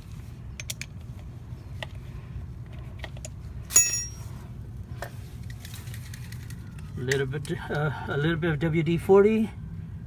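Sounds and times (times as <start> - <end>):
steady low hum: 0.0 - 10.0
metal tools clinking: 3.7 - 4.3
ringing metallic clink: 3.7 - 4.3.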